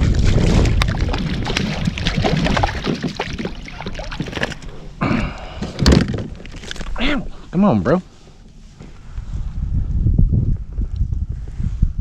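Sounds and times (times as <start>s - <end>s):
water splashing: 0.0s - 4.8s
wind rumbling on microphone: 0.0s - 7.4s, 8.3s - 12.0s
knocks and clicks on a kayak: 5.6s - 6.8s.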